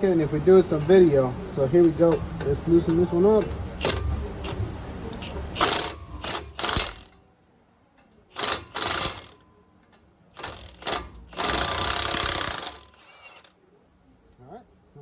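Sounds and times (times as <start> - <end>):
impact wrench hammering: 1.9 - 7.2, 8.3 - 9.4, 10.4 - 13.5.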